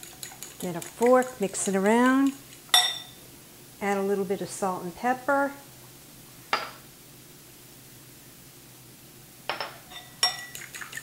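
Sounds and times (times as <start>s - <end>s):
fork clinking against bowl: 2.7s - 3.2s, 9.5s - 10.7s.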